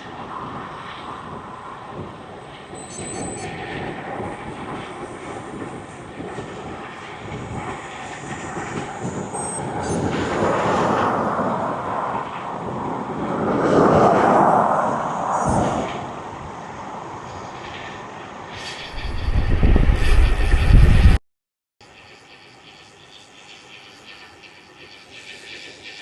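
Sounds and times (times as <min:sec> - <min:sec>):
road noise from moving bicycle: 0:00.0 - 0:21.2
vehicles passing: 0:08.8 - 0:19.9.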